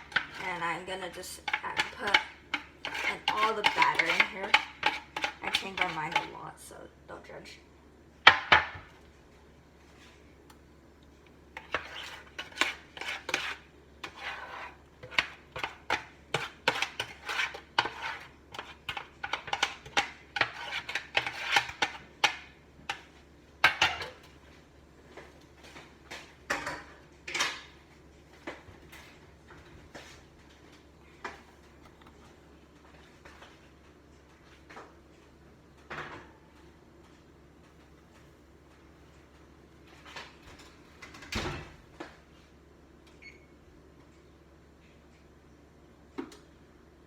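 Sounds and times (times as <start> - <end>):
utensil scraping mixing bowls: 0.0 - 6.8, 11.5 - 24.4.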